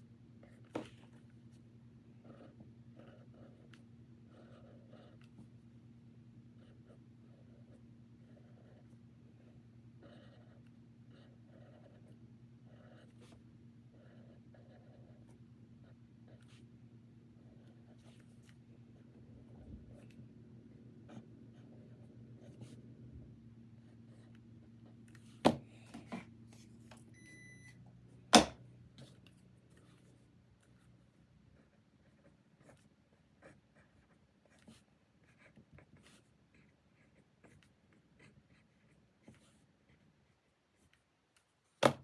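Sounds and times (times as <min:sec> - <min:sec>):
low steady hum: 0:00.0 - 0:41.0
pen scratching on paper: 0:02.2 - 0:05.4, 0:06.6 - 0:16.7, 0:21.0 - 0:22.9, 0:23.8 - 0:25.5, 0:31.5 - 0:41.0.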